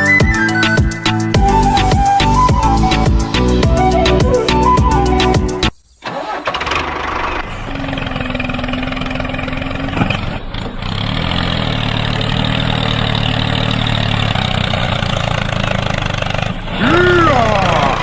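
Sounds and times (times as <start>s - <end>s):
small engine running: 6.1s - 18.0s.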